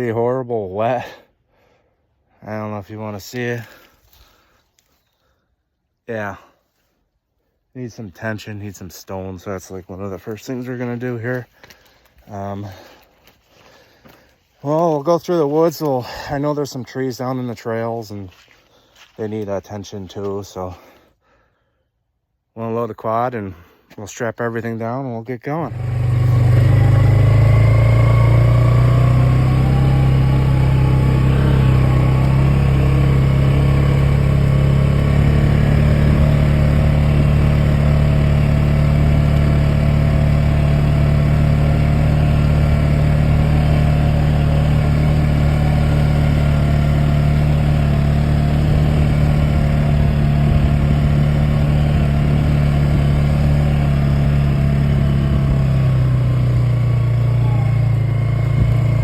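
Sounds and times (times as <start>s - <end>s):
vehicle engine running: 25.6s - 59.0s.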